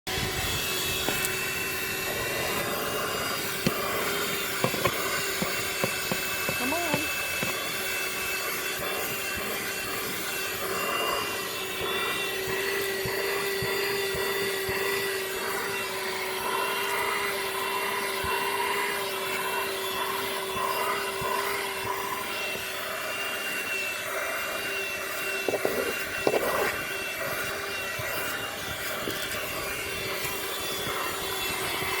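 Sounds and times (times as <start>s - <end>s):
handheld vacuum cleaner running: 0.1s - 32.0s
vacuum cleaner rattles: 0.3s - 15.3s.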